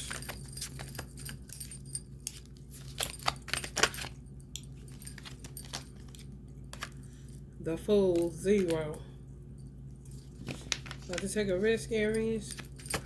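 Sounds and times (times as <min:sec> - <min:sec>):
steady low hum: 0:00.0 - 0:13.0
cards shuffling and clicking: 0:10.4 - 0:11.4.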